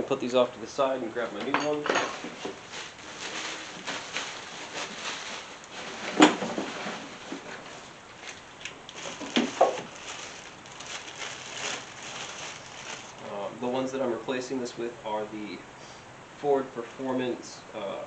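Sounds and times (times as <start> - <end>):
light rustling: 2.0 - 13.3.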